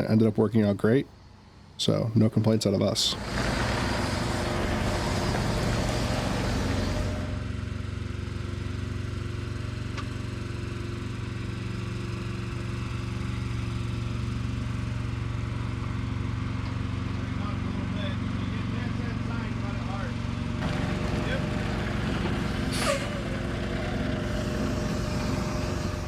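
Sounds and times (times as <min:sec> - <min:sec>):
heavy diesel engine running: 0:03.0 - 0:26.0
broad rushing noise: 0:03.1 - 0:07.4.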